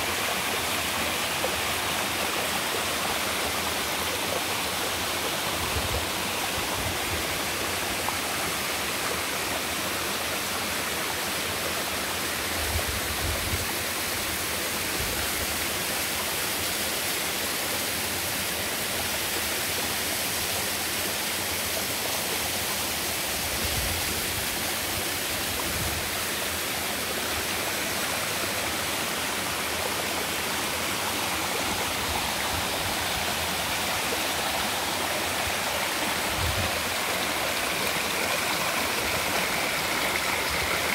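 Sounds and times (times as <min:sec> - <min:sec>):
waterfall rushing: 0:24.2 - 0:40.9.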